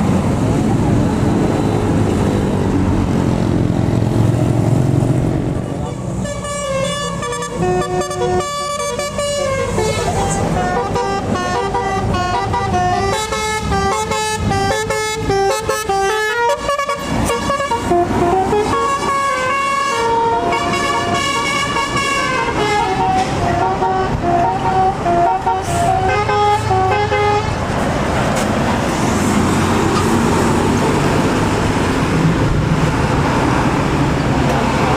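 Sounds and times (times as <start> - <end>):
engines and traffic noise: 0.0 - 34.9
musical bus horn melody: 5.7 - 27.8.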